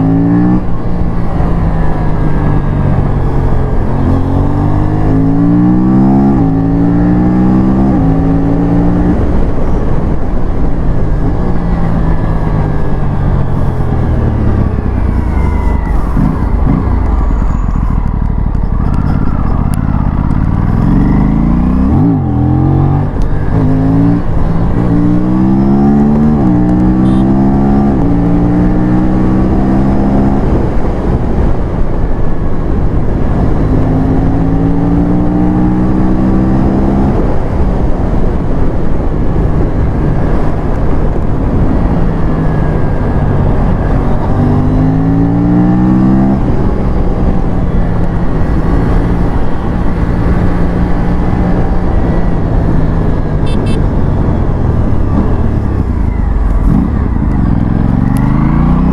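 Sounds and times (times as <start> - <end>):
heavy wind rush: 0.0 - 58.9
motorcycle engine accelerating: 0.0 - 58.9.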